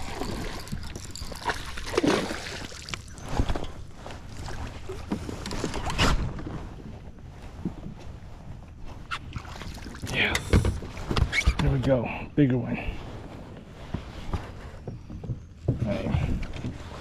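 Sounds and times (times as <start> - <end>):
water sloshing and splashing: 0.0 - 11.6.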